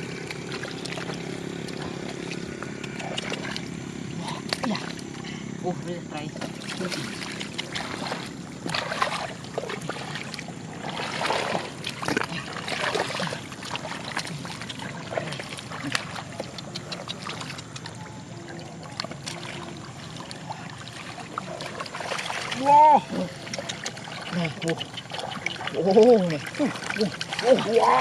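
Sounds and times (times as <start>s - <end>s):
small clicks and splashes: 0.0s - 5.4s, 6.4s - 28.0s
muddy water sloshing: 0.0s - 28.0s.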